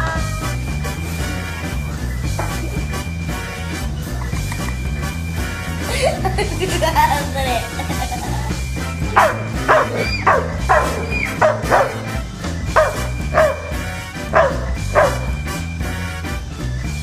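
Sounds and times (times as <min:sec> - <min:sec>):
background music: 0:00.0 - 0:17.0
dog yipping: 0:09.1 - 0:15.4.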